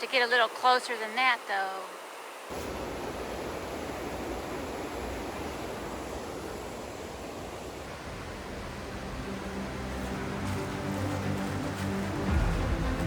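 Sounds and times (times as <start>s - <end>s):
faint background music: 7.9s - 13.0s.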